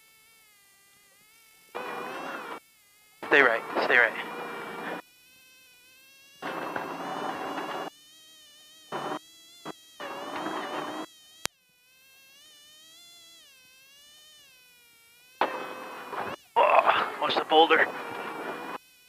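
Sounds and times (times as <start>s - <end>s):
race vehicle engine whining: 1.6s - 2.6s, 3.2s - 5.0s, 6.3s - 7.9s, 8.8s - 11.1s, 15.3s - 18.8s.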